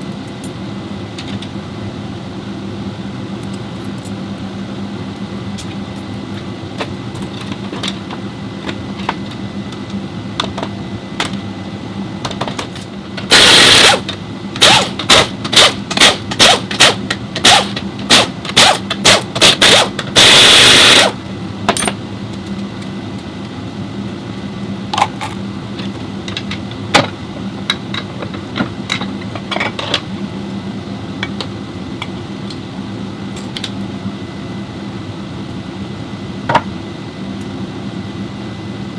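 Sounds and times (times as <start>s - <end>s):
steady machine hum: 0.0s - 38.9s
compressed air tool bursts: 13.3s - 14.0s, 14.6s - 21.2s.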